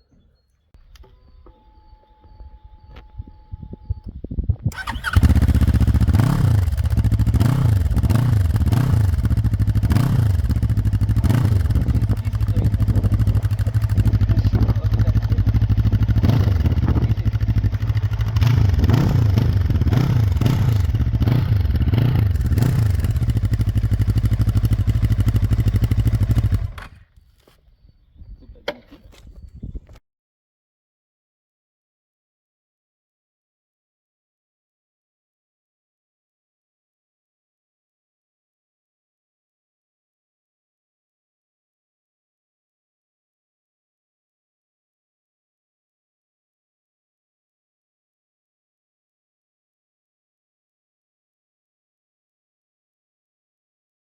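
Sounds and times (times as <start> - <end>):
motorcycle engine revving: 4.7 - 27.0
motorcycle engine idling: 4.7 - 27.1.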